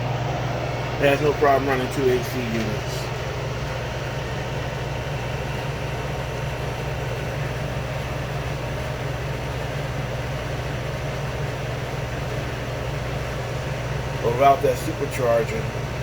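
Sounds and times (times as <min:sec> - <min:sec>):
air conditioners running: 0:00.0 - 0:16.0.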